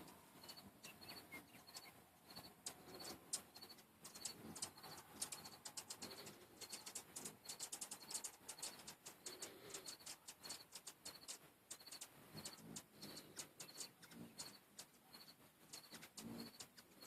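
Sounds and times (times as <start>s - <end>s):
hummingbirds chipping and chattering: 0.0s - 17.0s.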